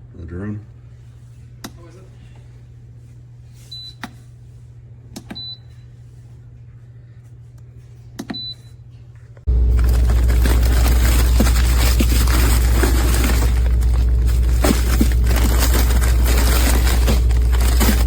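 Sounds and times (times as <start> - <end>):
steady low hum: 0.0 - 18.0
loud noise: 9.5 - 18.0.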